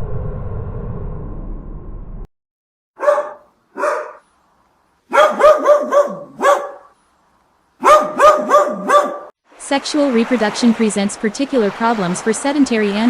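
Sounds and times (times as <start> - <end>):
dog barking: 3.0 - 4.3, 5.1 - 7.0, 7.8 - 9.3.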